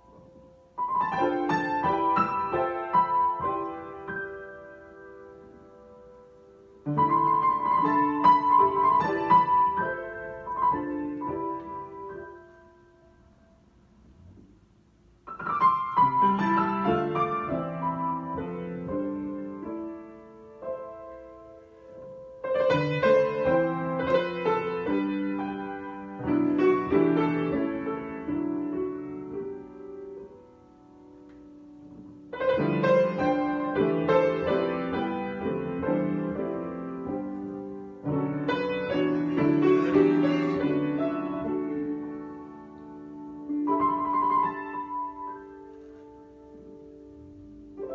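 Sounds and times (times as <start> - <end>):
solo piano: 0.0 - 47.9.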